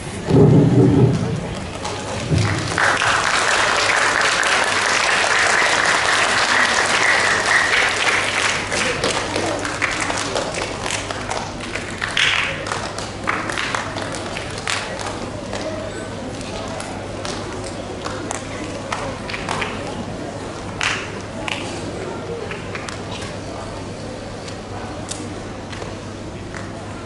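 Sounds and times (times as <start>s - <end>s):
audience applauding: 1.1s - 15.2s.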